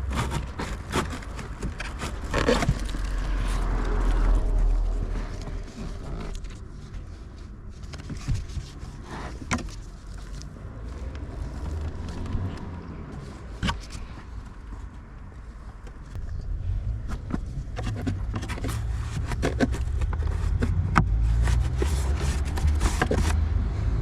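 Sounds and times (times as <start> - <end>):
low rumble: 2.7 - 6.6.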